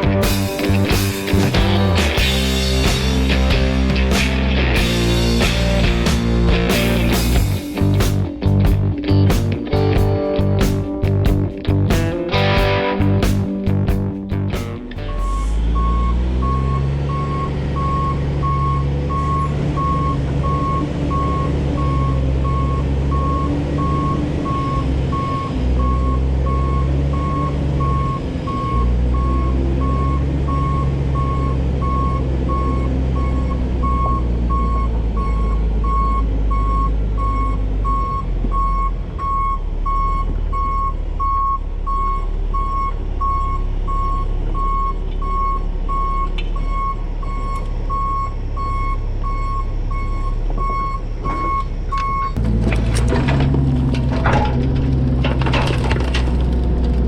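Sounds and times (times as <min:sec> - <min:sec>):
diesel engine drone: 0:00.0 - 0:57.0
reversing alarm beeping: 0:15.1 - 0:52.4.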